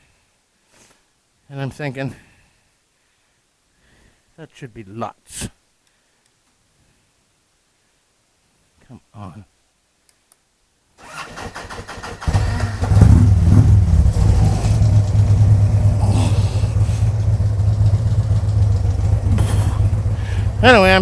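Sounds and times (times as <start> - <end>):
electric starter cranking: 11.0 - 17.4
motorcycle engine idling: 12.1 - 21.0.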